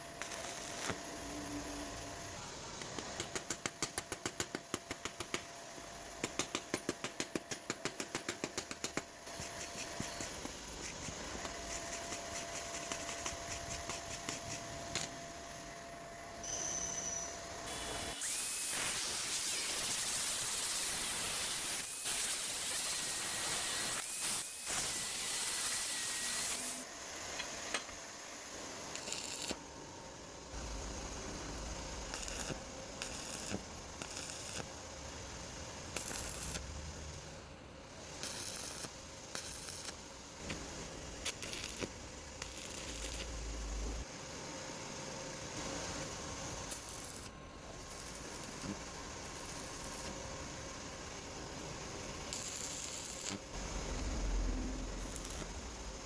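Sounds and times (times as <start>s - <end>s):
welding arc hissing and crackling: 0.0s - 5.5s, 6.2s - 15.2s, 16.4s - 29.7s, 30.4s - 44.2s, 45.4s - 56.0s.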